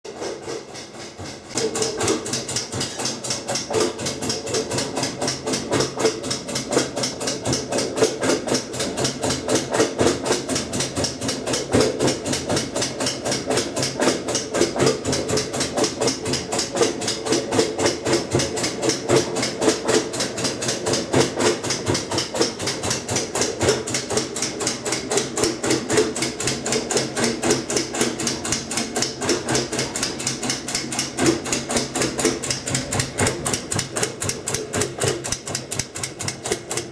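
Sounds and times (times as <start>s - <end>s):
washing machine clicking rapidly: 0.1s - 36.9s
washing machine hum: 0.1s - 36.9s.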